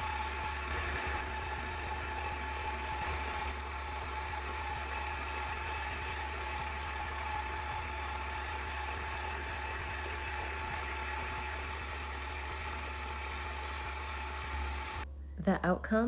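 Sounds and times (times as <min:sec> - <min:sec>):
stand mixer motor humming: 0:00.0 - 0:15.0
high whine: 0:00.0 - 0:15.4.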